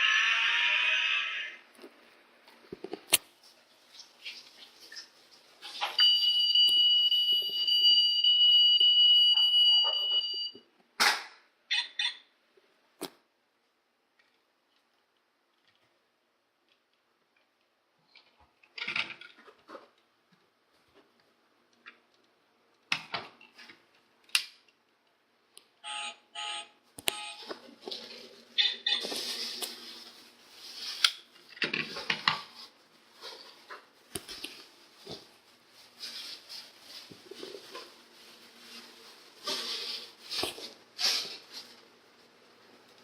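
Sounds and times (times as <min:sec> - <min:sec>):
short beeps: 0:06.0 - 0:10.6.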